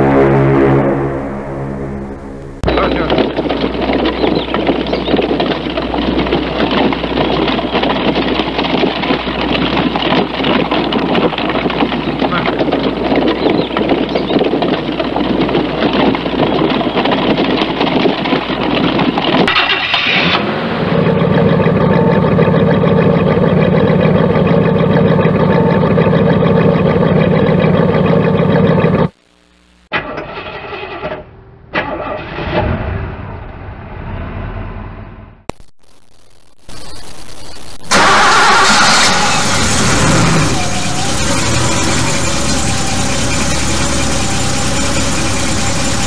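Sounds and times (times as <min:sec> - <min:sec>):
car engine starting and idling: 0:01.4 - 0:29.2, 0:29.9 - 0:35.6, 0:37.8 - 0:46.0
second car engine running: 0:01.9 - 0:29.2, 0:37.6 - 0:46.0
horse-drawn carriage: 0:02.7 - 0:20.2.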